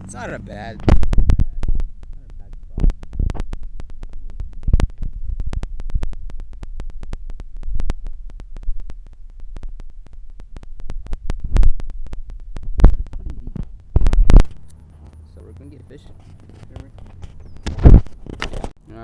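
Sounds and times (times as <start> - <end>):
wind buffeting the microphone: 16.2 - 18.7.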